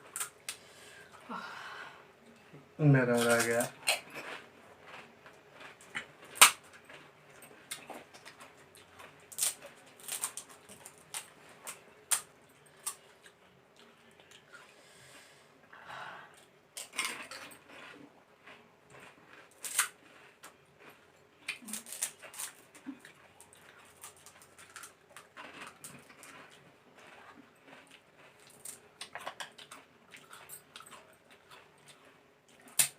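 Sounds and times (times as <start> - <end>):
crisp shells crunching: 7.7 - 13.0, 19.4 - 20.0, 21.5 - 26.6.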